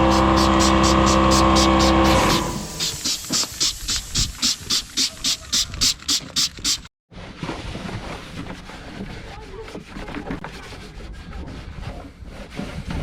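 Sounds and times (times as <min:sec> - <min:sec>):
rhythmic scrubbing strokes: 0:00.0 - 0:06.9.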